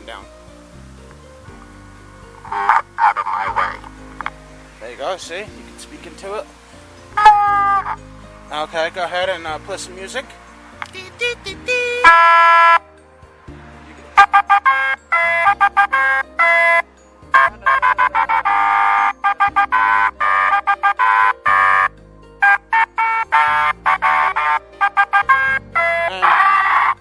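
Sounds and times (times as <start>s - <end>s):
electronic beeping tune over bass: 14.2s - 27.0s.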